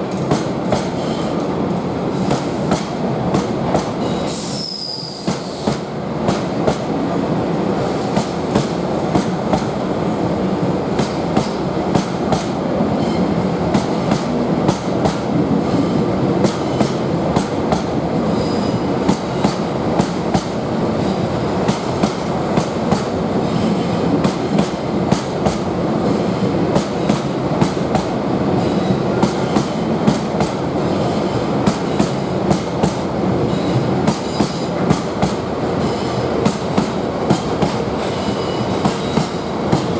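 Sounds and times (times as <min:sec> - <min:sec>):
train rumble: 0:05.2 - 0:39.9
train wheels clacking over rail joints: 0:33.7 - 0:39.9.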